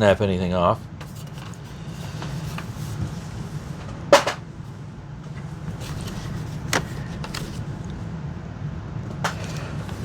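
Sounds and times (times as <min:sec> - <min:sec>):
low steady hum: 0:00.0 - 0:10.0
hard plastic parts knocking: 0:03.8 - 0:04.4.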